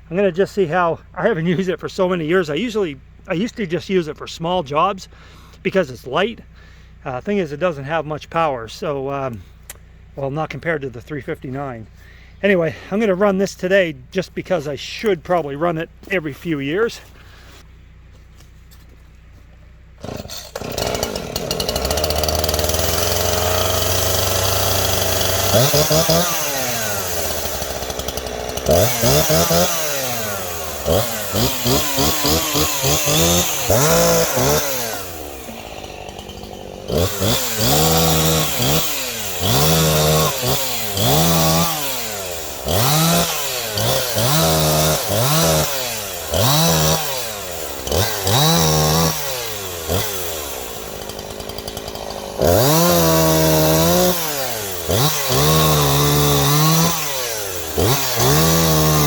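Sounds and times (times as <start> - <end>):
chainsaw revving: 20.0 - 59.0.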